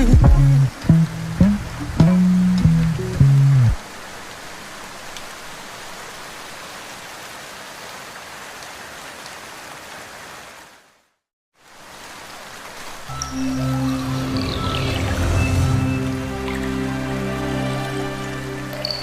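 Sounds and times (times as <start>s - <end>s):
music: 0.0s - 3.8s, 13.1s - 19.0s
steady rain falling: 0.0s - 19.0s.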